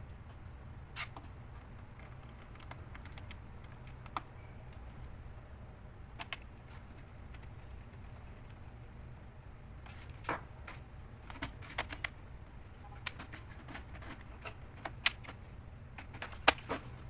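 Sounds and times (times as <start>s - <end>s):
steady low hum: 0.0s - 17.0s
laptop clicks and taps: 1.1s - 4.3s, 6.2s - 6.5s.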